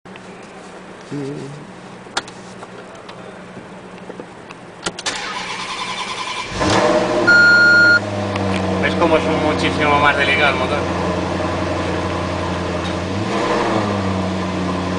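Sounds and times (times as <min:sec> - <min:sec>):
car engine starter cranking: 0:04.8 - 0:08.0
engine revving: 0:05.2 - 0:14.9
loud steady high beep: 0:07.3 - 0:08.0.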